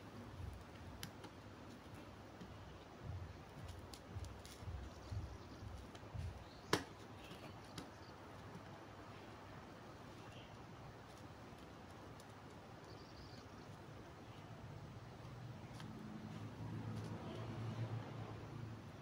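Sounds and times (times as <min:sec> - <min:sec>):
soft low knocks: 0:02.4 - 0:06.8.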